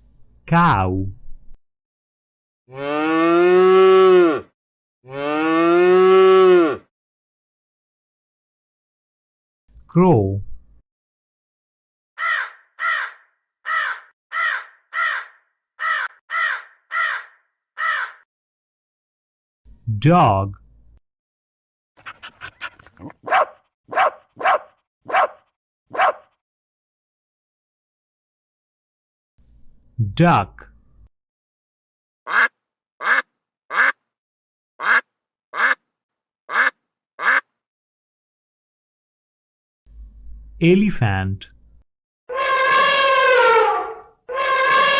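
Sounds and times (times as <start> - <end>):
crow cawing: 12.2 - 18.3, 32.3 - 34.0, 34.8 - 35.0, 35.6 - 35.8, 36.5 - 37.4
duck quacking: 32.3 - 34.0, 34.8 - 35.8, 36.5 - 37.5.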